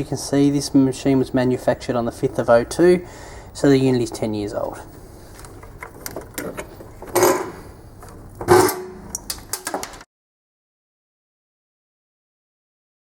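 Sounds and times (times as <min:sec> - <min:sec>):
metal tools clattering: 0:06.1 - 0:07.6
loud ringing metal clanks: 0:08.5 - 0:09.0.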